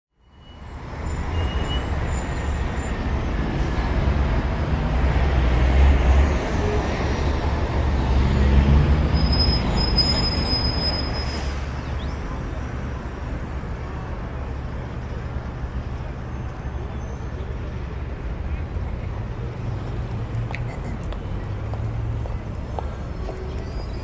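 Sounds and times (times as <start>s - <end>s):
heavy traffic rumble: 0.3s - 24.0s
thin high squeal: 9.1s - 11.9s.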